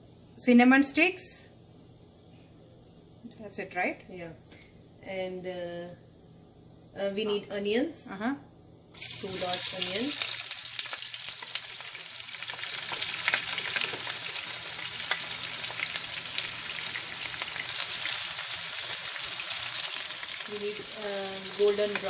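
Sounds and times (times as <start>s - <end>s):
onions sizzling in hot oil: 9.0s - 22.0s
small crackles and pops: 10.2s - 16.0s.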